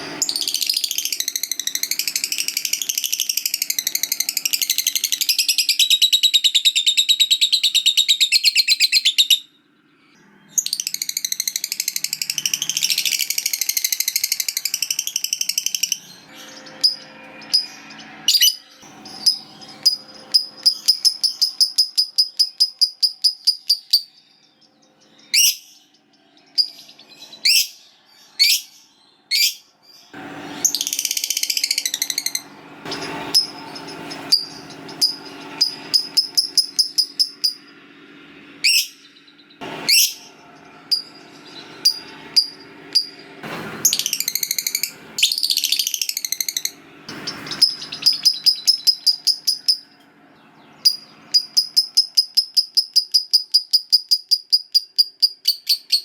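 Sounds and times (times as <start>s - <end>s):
lovebird chirps and chattering: 0.2s - 9.5s, 10.5s - 30.0s, 30.6s - 37.8s, 39.8s - 40.3s, 40.9s - 43.2s, 43.8s - 50.0s, 50.8s - 56.0s
lovebird long trill: 10.6s - 37.9s, 38.5s - 43.3s, 43.9s - 56.0s.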